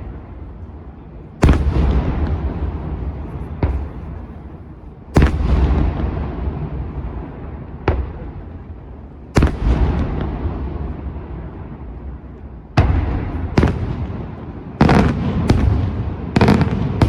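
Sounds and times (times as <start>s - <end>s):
rumbling echo: 0.0s - 17.0s
firework shells exploding: 1.4s - 4.5s, 5.2s - 7.1s, 9.4s - 11.2s, 12.8s - 17.0s.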